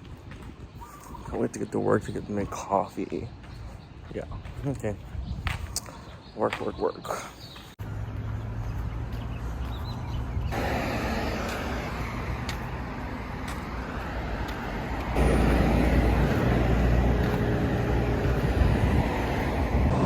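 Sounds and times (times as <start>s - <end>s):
car road and engine noise: 7.7s - 20.0s.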